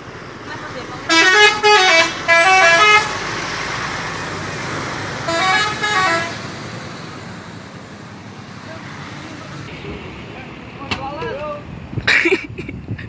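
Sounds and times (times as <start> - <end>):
bus musical horn tune: 1.1 - 3.2, 5.2 - 6.5.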